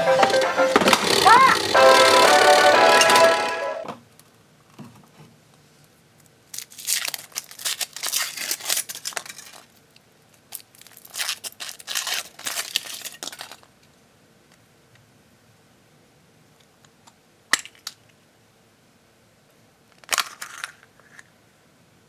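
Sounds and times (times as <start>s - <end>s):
wrapper tearing and crinkling: 6.5s - 9.8s, 10.5s - 13.7s.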